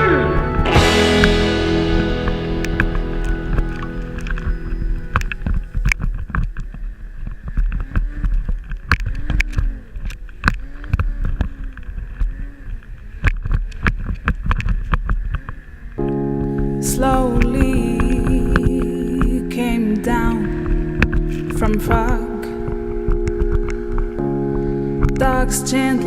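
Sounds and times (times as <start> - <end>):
music track: 0.0 - 6.1, 16.0 - 26.0.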